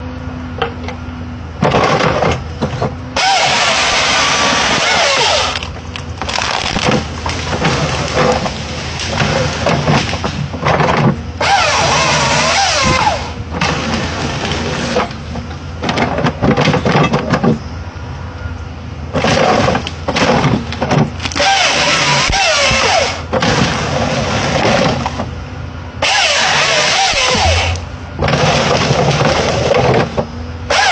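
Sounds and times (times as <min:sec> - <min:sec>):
chainsaw revving and idling: 0:03.2 - 0:10.1, 0:11.4 - 0:15.2, 0:21.2 - 0:25.0, 0:26.0 - 0:30.0, 0:30.7 - 0:30.9.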